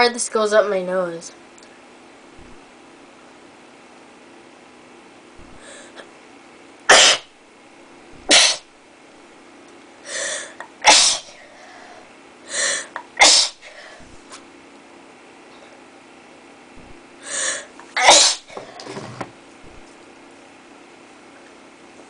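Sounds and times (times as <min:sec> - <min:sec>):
person sneezing: 0:06.9 - 0:07.3, 0:08.2 - 0:08.7, 0:10.2 - 0:11.4, 0:12.5 - 0:14.4, 0:17.3 - 0:18.7.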